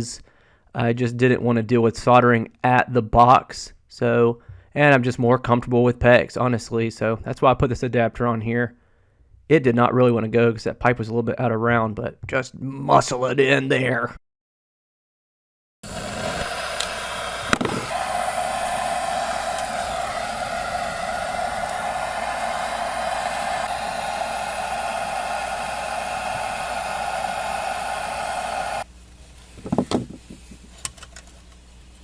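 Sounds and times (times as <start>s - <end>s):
torch flame hissing: 15.8s - 30.6s.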